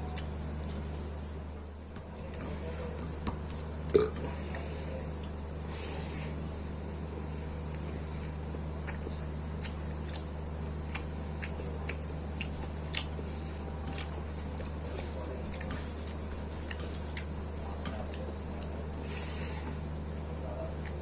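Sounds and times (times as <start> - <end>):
steady low hum: 0.0 - 21.0
person chewing with mouth smacks: 7.7 - 18.8.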